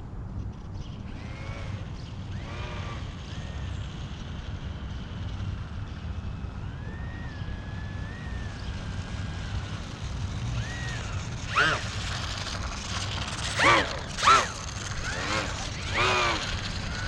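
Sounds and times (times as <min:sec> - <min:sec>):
faint thin whine: 0:00.0 - 0:17.0.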